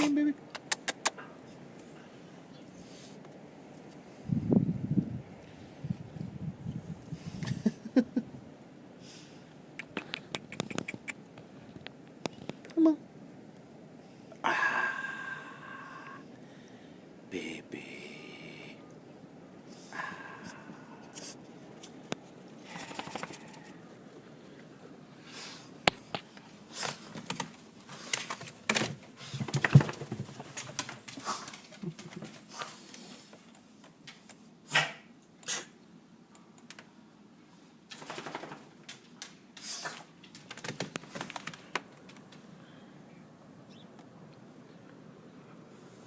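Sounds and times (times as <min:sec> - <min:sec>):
dog claws clicking and tapping: 0:40.2 - 0:42.4.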